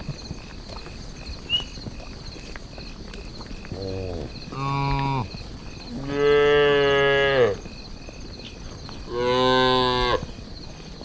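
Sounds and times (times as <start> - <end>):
cattle mooing: 3.8 - 5.3, 5.9 - 7.6.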